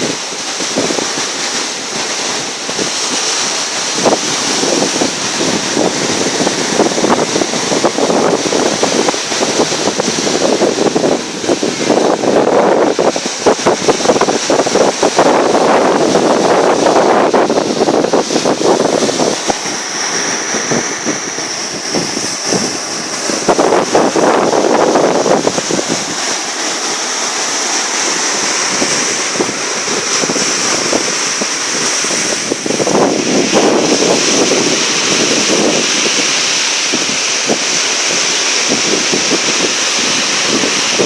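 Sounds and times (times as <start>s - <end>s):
sea waves splashing: 0.0s - 41.0s
wind buffeting microphone: 0.0s - 41.0s
steady high hiss: 18.1s - 41.0s.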